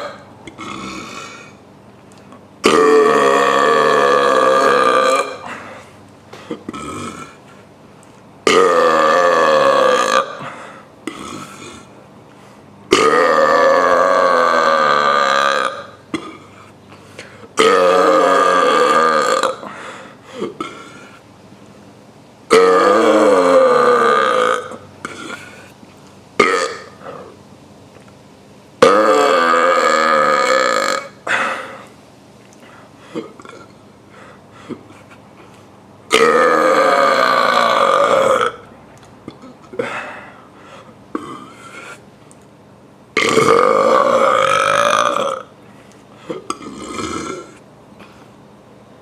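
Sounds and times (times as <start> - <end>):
person belching loudly: 0.0 - 1.4, 2.6 - 5.7, 6.5 - 7.4, 8.4 - 11.9, 12.9 - 16.4, 17.6 - 19.7, 22.5 - 25.5, 26.4 - 27.3, 28.8 - 31.6, 36.1 - 38.7, 43.2 - 45.5, 46.3 - 47.6.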